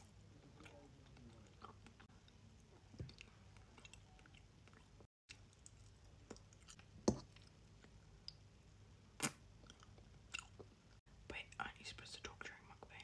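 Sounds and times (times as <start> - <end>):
person chewing wetly: 0.0 - 8.5, 9.2 - 10.8.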